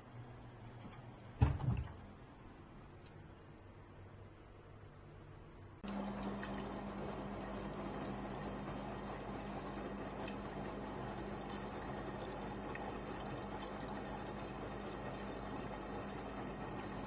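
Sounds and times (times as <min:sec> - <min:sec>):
washing machine running: 0:05.8 - 0:17.0.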